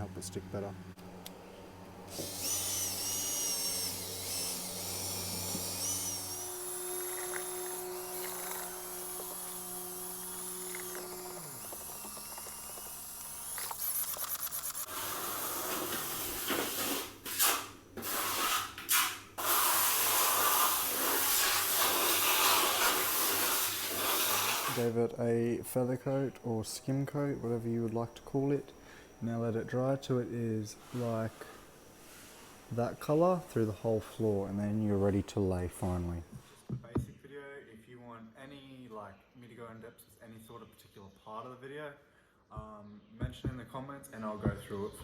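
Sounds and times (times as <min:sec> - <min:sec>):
power tool motor humming: 0:02.0 - 0:16.9, 0:19.4 - 0:24.9
loud hissing grinding noise: 0:02.1 - 0:17.2, 0:19.4 - 0:36.2.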